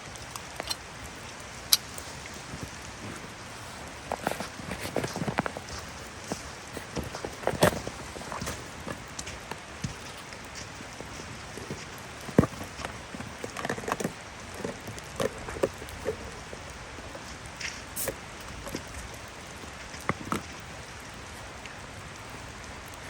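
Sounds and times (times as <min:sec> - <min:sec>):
steady hiss: 0:14.2 - 0:23.0.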